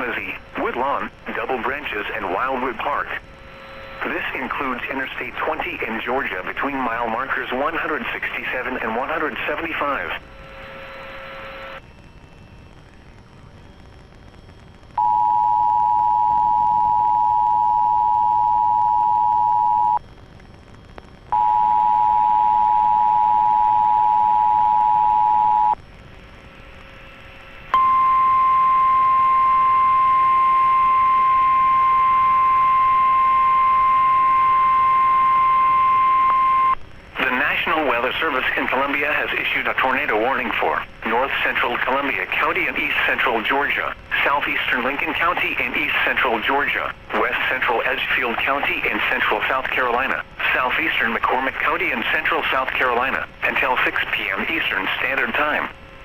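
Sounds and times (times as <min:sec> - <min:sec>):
radio hiss: 0:00.0 - 0:11.8, 0:21.4 - 0:56.0
single-tone warning alarm: 0:15.0 - 0:20.0, 0:21.4 - 0:25.8, 0:27.7 - 0:36.8
two-tone attention signal: 0:27.8 - 0:36.8.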